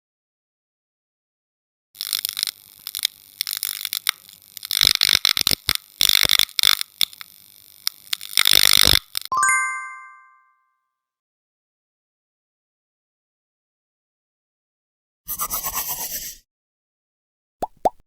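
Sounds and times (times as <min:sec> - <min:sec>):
sharp clicks: 0:02.0 - 0:09.3
bell-like ding: 0:09.4 - 0:10.8.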